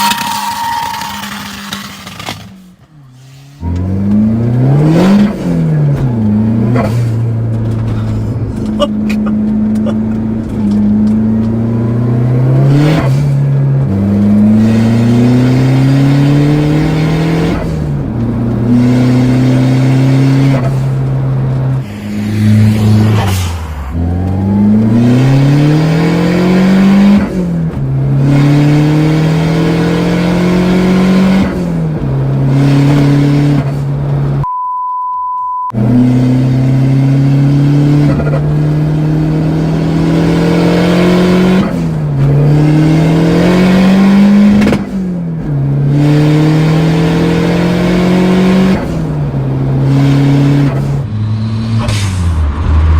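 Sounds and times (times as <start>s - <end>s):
car engine accelerating hard: 0.0s - 34.4s, 35.8s - 52.9s
short steady beep: 34.4s - 35.8s.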